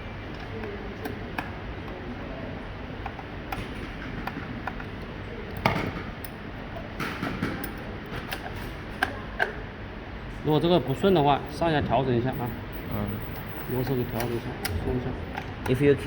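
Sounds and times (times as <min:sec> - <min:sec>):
lock hardware clicks and knocks: 0:03.0 - 0:09.6, 0:13.2 - 0:15.9.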